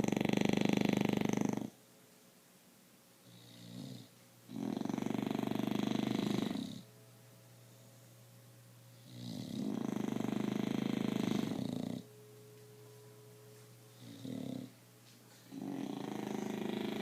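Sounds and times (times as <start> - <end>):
dog snoring: 0.0 - 1.8, 3.2 - 6.9, 8.9 - 12.1, 13.9 - 14.8, 15.4 - 17.0.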